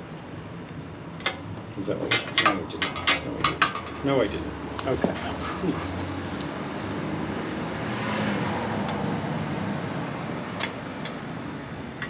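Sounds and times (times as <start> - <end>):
motor vehicle passing: 4.4 - 11.5.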